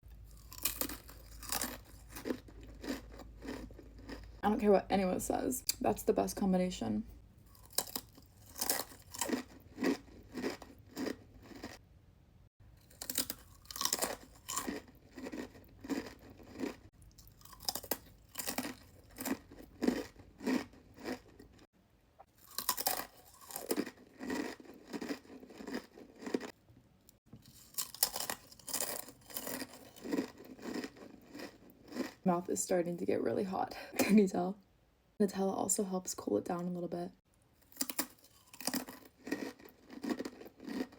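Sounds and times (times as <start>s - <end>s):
crunchy chewing of chips: 0.1s - 4.4s, 7.4s - 11.8s, 12.8s - 32.2s, 37.6s - 40.9s.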